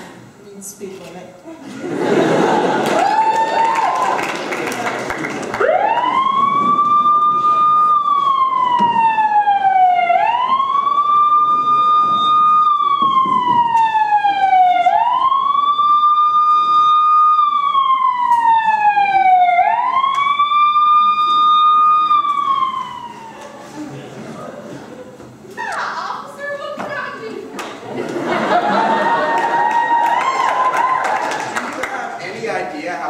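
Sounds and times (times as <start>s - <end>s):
siren wailing: 5.5s - 23.8s, 28.7s - 31.3s.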